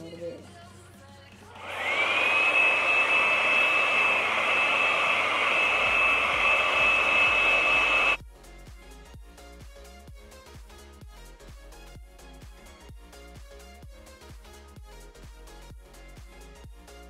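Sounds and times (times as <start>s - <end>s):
hair dryer blowing: 1.5s - 8.2s.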